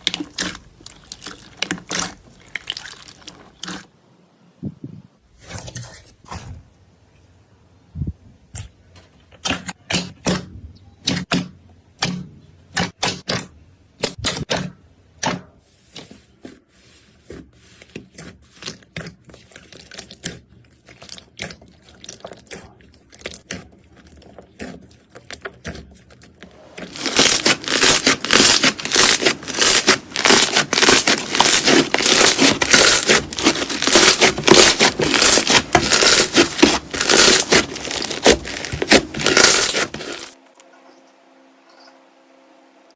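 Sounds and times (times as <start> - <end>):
slime crunching and crackling: 0.0 - 3.9, 17.8 - 40.4.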